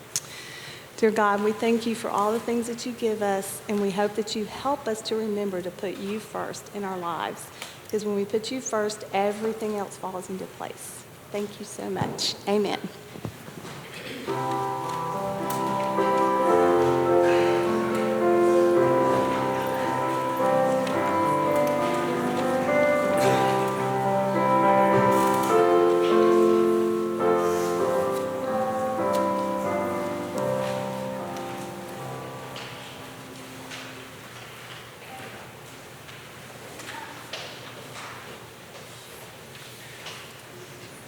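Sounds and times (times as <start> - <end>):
slow keyboard chords: 14.2 - 34.7.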